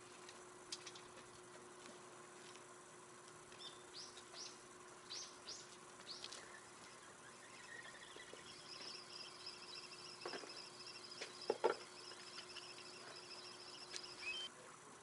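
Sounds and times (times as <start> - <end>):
faint steady hum: 0.0 - 15.0
faint bird chirps: 3.5 - 14.8.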